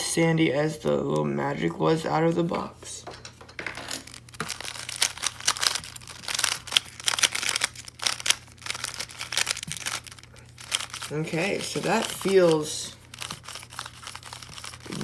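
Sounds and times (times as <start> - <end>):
puzzle cube plastic clicks: 4.0 - 15.0.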